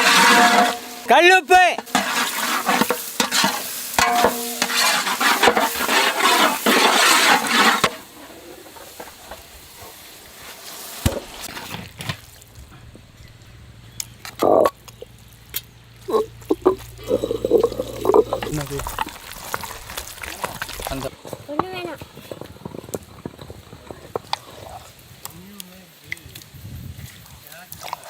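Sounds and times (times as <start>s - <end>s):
food sizzling in oil: 0.0s - 11.7s
knocks in a pan: 1.8s - 6.9s.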